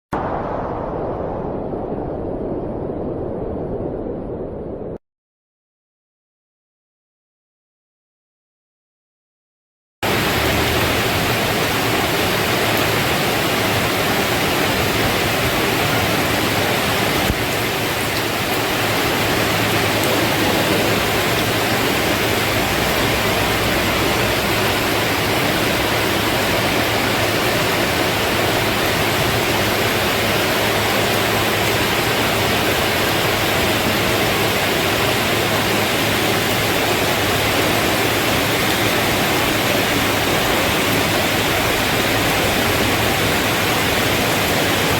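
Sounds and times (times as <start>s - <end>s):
rain falling: 10.0s - 44.9s.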